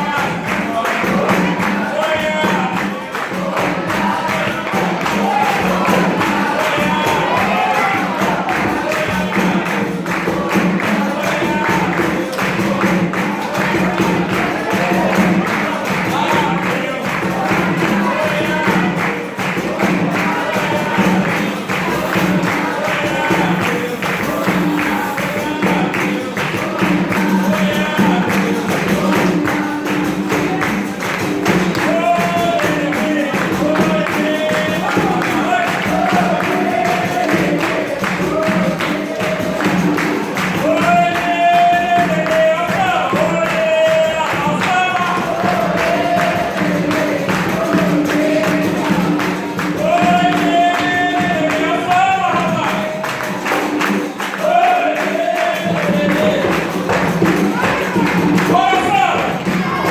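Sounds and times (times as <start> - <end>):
people singing: 0.0 - 59.9
percussion rhythm: 0.0 - 59.9.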